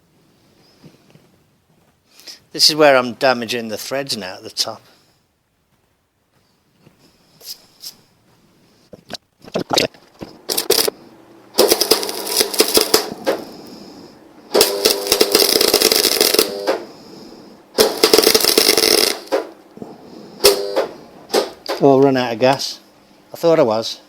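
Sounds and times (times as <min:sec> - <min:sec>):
wire-feed hum: 0:08.3 - 0:24.0
welder arc crackling: 0:10.5 - 0:17.1, 0:17.7 - 0:19.8, 0:20.4 - 0:22.7.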